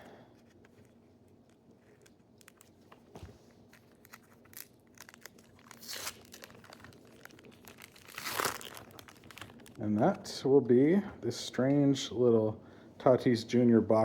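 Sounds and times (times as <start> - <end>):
wrapper crinkling and tearing: 0.8 - 2.9, 3.6 - 10.0.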